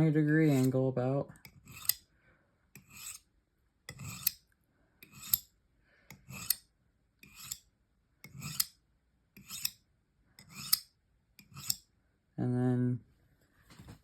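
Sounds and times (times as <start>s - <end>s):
knife scraping on honing rod: 0.4s - 2.1s, 2.8s - 3.3s, 3.9s - 8.8s, 9.4s - 9.8s, 10.4s - 11.9s.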